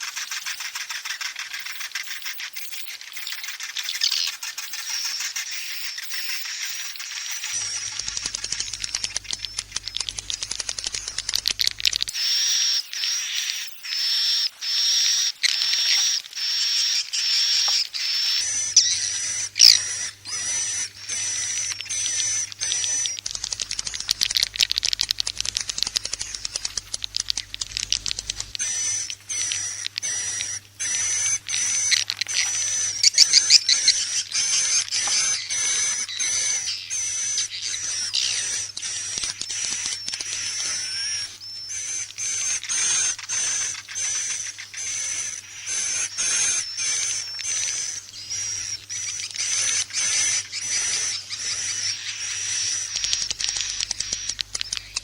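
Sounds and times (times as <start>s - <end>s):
swiftlet chatter of twitters: 0.0s - 55.0s
high chirp: 1.6s - 55.0s.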